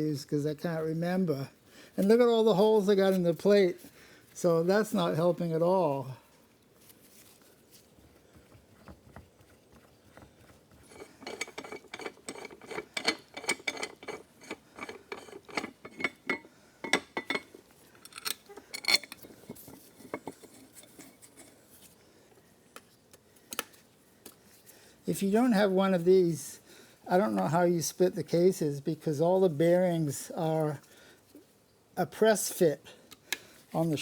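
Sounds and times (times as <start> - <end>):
metal clinking and rattling: 10.8 - 21.5.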